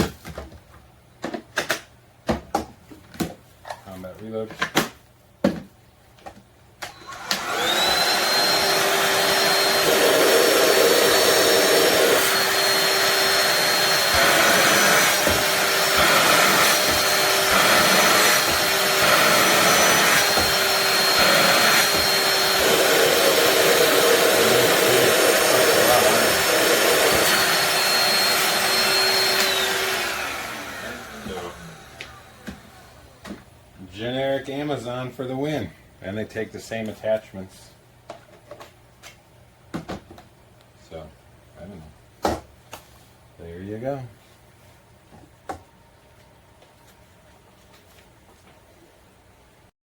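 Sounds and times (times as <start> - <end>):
handheld vacuum motor whine: 6.9 - 33.4.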